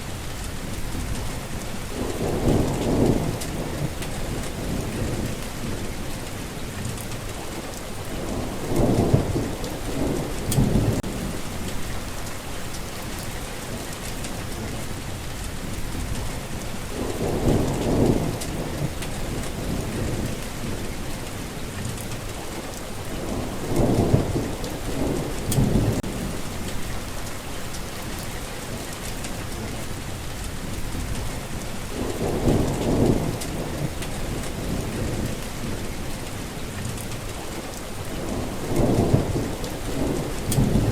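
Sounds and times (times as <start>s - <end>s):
steady rain: 0.0s - 40.9s
thunder rolling: 0.6s - 6.1s, 8.2s - 14.7s, 15.6s - 21.1s, 23.2s - 29.7s, 30.6s - 36.1s, 38.2s - 40.9s.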